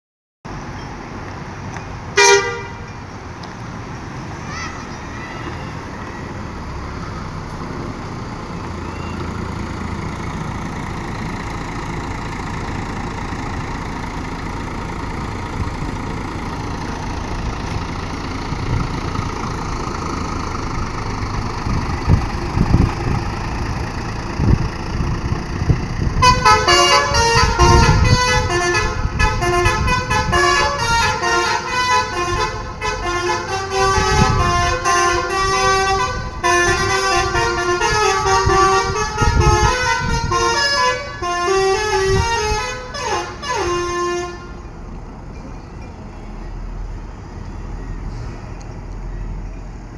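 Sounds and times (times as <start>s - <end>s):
road traffic: 0.4s - 49.9s
large vehicle engine rumbling: 0.5s - 49.9s
bus musical horn melody: 2.2s - 2.9s, 8.5s - 44.8s.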